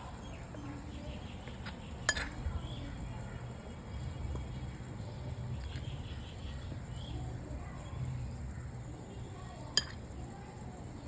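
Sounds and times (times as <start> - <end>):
spoon clinking against bowl: 2.0 - 2.4, 9.7 - 10.0
spoon stirring powder in bowl: 9.7 - 10.5.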